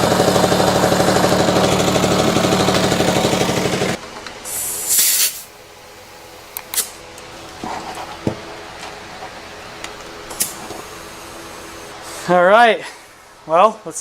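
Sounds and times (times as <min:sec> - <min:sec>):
short loud hiss: 0:04.5 - 0:05.5.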